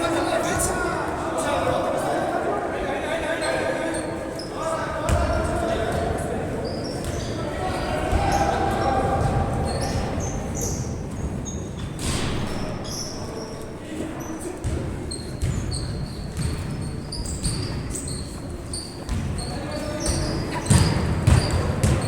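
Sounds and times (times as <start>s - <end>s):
sneakers squeaking: 3.2s - 22.0s
basketball bouncing: 15.4s - 16.8s, 19.0s - 19.4s, 20.0s - 22.0s.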